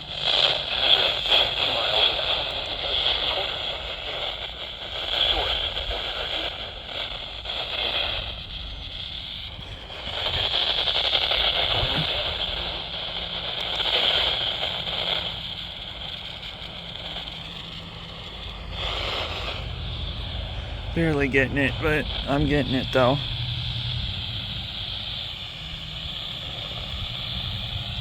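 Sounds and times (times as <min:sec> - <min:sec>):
radio static and hiss: 0:09.5 - 0:23.4
faint radio broadcast: 0:20.0 - 0:23.2.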